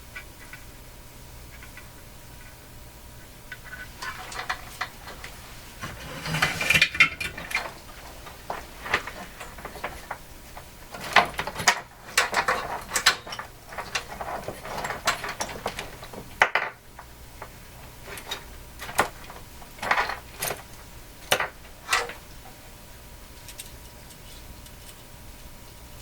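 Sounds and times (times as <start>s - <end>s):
tools clattering on workbench: 3.6s - 22.2s.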